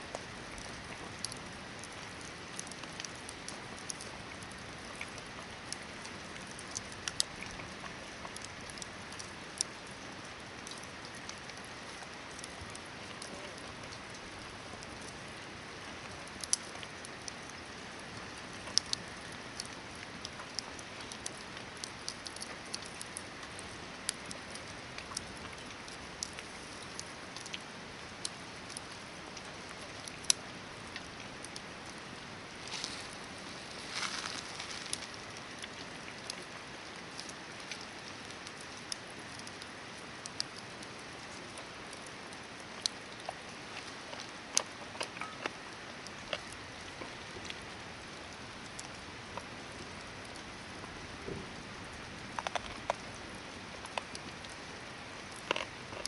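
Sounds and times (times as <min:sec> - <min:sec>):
rustling hiss: 0:00.0 - 0:40.5
campfire crackling and popping: 0:00.0 - 0:56.0.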